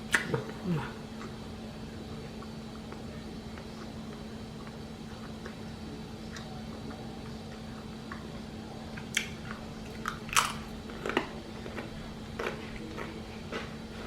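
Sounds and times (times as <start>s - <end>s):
steady low hum: 0.0s - 14.0s
chewing and mouth clicks: 8.9s - 14.0s.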